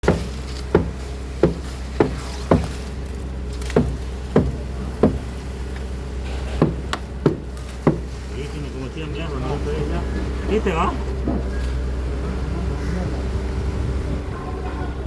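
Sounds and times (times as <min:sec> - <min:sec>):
sharp knocks: 0:00.0 - 0:05.5, 0:06.3 - 0:08.4
engine hum: 0:00.0 - 0:15.0.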